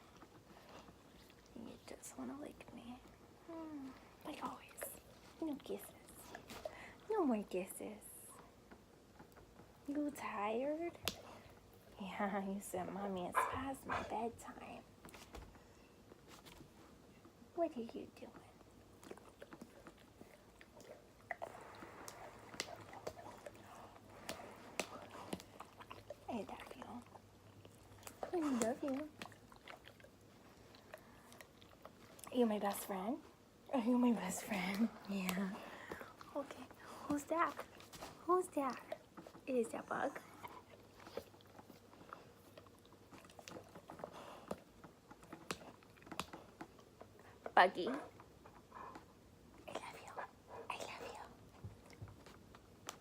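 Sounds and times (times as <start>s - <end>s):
dog licking and smacking: 18.7s - 32.3s, 40.3s - 47.5s.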